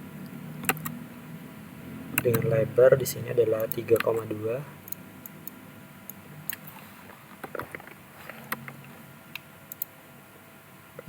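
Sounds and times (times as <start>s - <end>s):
low room hum: 0.0s - 11.0s
mouse and keyboard clicks: 3.6s - 4.2s.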